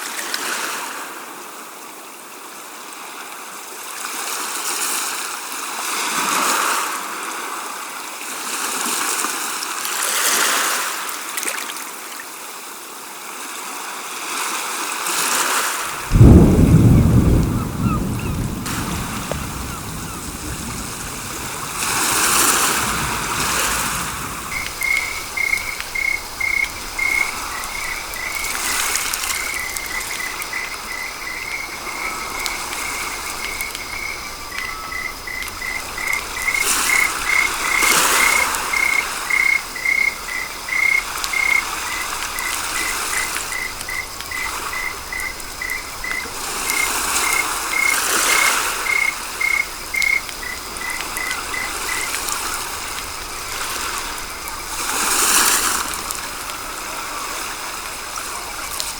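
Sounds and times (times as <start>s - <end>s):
rushing noise: 15.9s - 54.4s.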